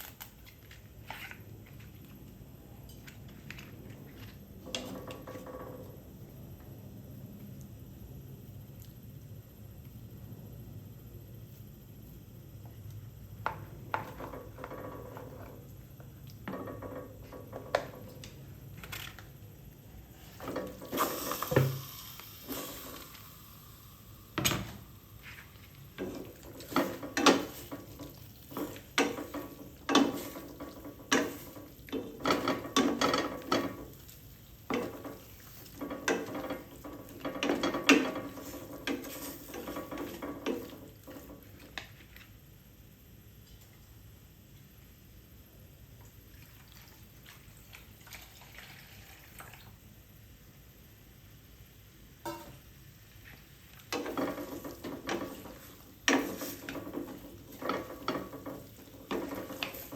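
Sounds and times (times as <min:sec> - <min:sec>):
utensils clattering against pots: 0:20.3 - 0:21.8, 0:25.9 - 0:34.0, 0:34.7 - 0:41.7, 0:53.9 - 0:59.9.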